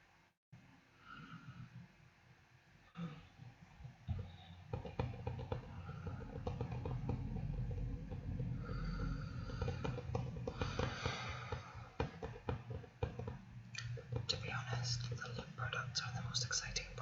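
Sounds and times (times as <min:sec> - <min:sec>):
breathing: 0:00.9 - 0:01.9, 0:05.7 - 0:06.8, 0:08.4 - 0:12.3
breathy hisses: 0:08.6 - 0:12.0
lip smacks and clicks: 0:13.7 - 0:16.3.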